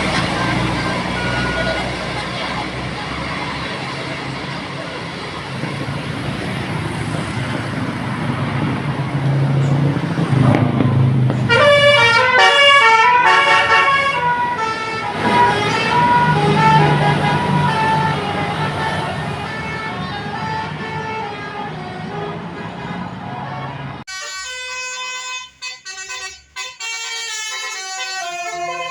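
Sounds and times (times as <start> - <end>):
multi-tone horn playing tune: 0.0 - 2.4, 11.5 - 23.0, 24.1 - 28.9
bus engine running: 0.0 - 28.9.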